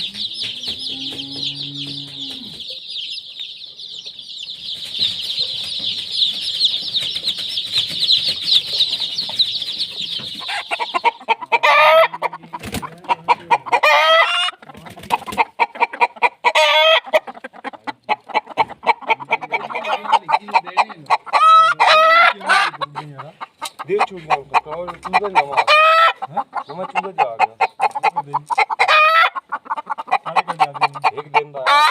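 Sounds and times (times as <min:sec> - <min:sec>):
chicks peeping: 0:00.0 - 0:31.9
hens clucking and cackling: 0:00.0 - 0:31.9.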